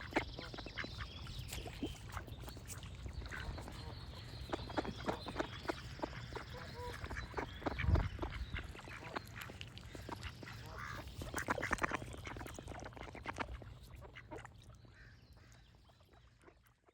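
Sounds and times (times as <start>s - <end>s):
birds singing: 0.0s - 11.6s
ducks quacking: 3.3s - 15.1s.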